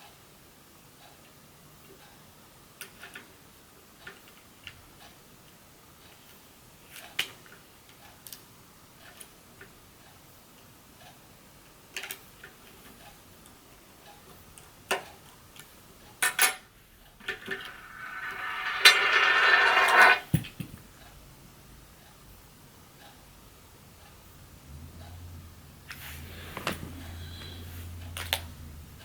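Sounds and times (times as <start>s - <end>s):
rustling scrape: 17.3s - 20.3s.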